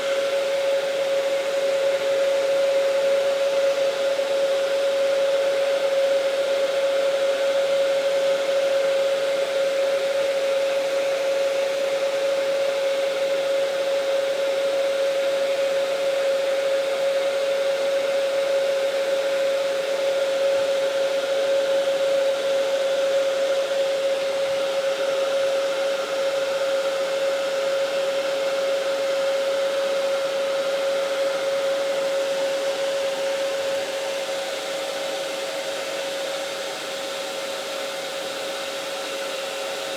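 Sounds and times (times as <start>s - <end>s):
hair dryer running: 0.0s - 39.9s.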